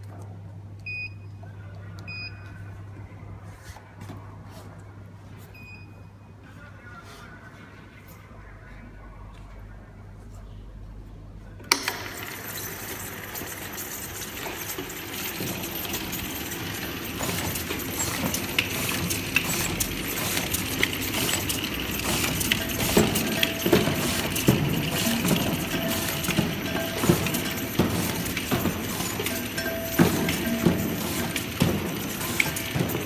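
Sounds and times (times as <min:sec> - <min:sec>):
labeling machine running: 0:11.7 - 0:33.0
glass bottles clinking: 0:12.2 - 0:33.0.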